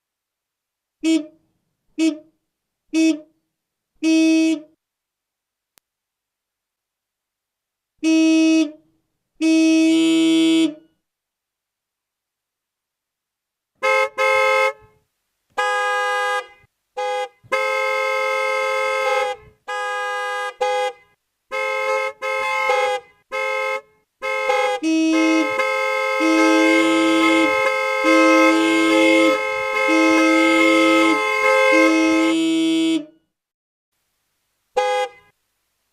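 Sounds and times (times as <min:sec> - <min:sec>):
car horns honking: 0:01.0 - 0:01.4, 0:04.0 - 0:04.8, 0:08.0 - 0:08.8, 0:09.4 - 0:11.0, 0:13.8 - 0:33.2, 0:34.7 - 0:35.4.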